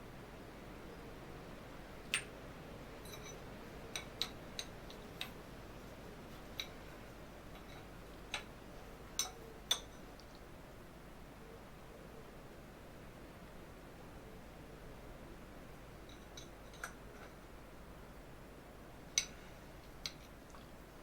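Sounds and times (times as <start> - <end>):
small metal parts and tools clicking: 3.0 - 5.4.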